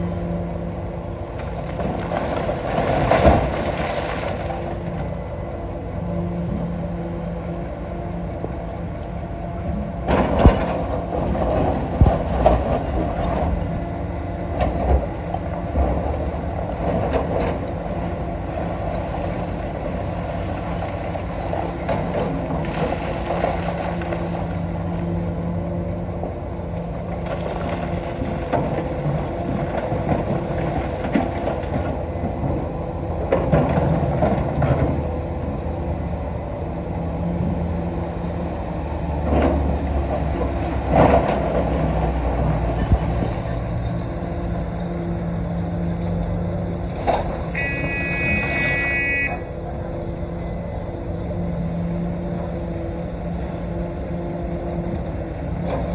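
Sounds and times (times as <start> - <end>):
excavator diesel engine: 0.0 - 55.9
horn: 47.5 - 49.5.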